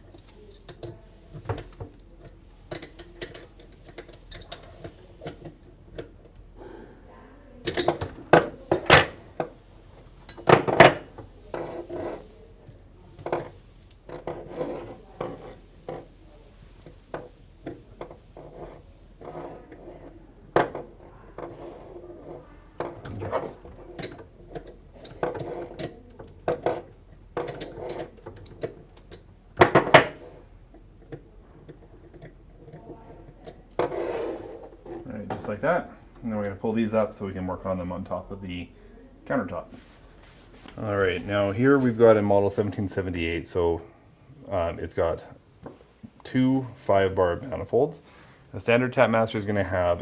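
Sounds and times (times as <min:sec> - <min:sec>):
wrench and metal fittings clanking: 0:00.2 - 0:06.2, 0:10.2 - 0:11.7, 0:22.8 - 0:30.2.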